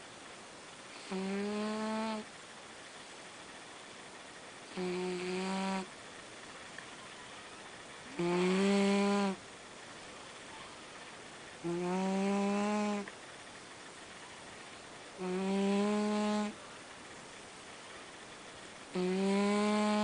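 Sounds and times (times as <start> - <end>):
cat snoring: 0.9 - 2.3, 4.7 - 5.9, 8.1 - 9.4, 11.6 - 13.1, 15.2 - 16.6, 18.9 - 20.0.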